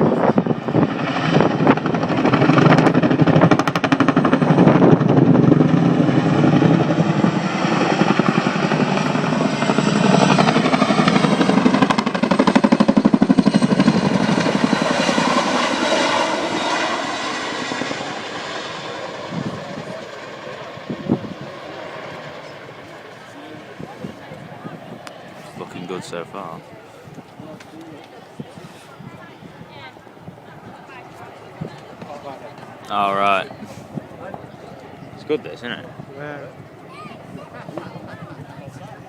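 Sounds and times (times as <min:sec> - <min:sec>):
helicopter rotor blade slap: 0:00.1 - 0:26.1, 0:36.6 - 0:39.0.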